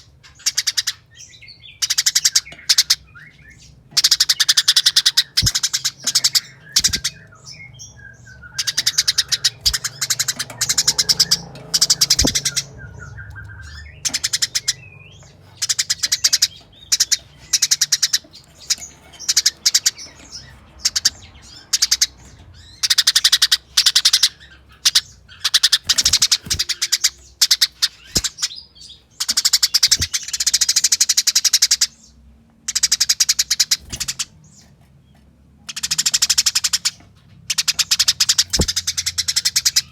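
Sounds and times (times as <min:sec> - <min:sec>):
sparrow chattering calls: 0:00.0 - 0:34.8, 0:35.7 - 0:39.9.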